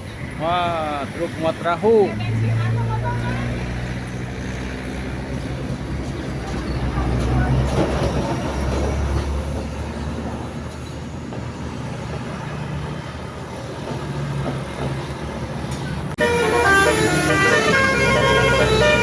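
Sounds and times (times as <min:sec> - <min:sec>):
heavy traffic engine rumble: 0:00.0 - 0:19.0
musical horn melody: 0:16.2 - 0:19.0.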